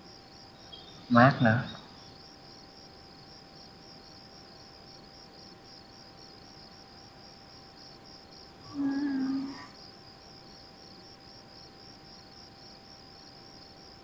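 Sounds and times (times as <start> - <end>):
crickets chirping: 0.0 - 14.0
faint steady hum: 0.0 - 14.0
short low pitched call: 8.7 - 9.7.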